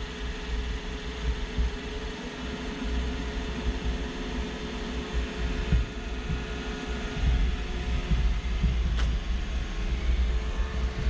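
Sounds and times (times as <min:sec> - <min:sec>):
robot vacuum motor whirring: 0:00.0 - 0:05.2.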